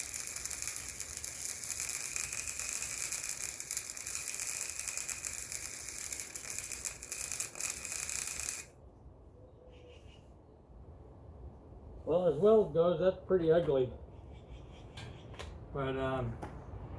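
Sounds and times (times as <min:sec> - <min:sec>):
welding arc crackling: 0:00.0 - 0:08.7.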